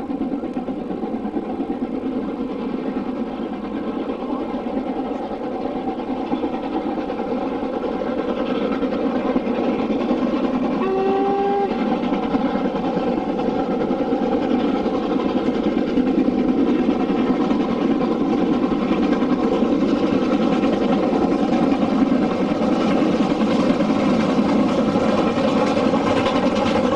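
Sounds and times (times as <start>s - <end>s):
steam locomotive exhaust rumbling: 0.0s - 26.9s
steam whistle blast: 10.6s - 12.4s.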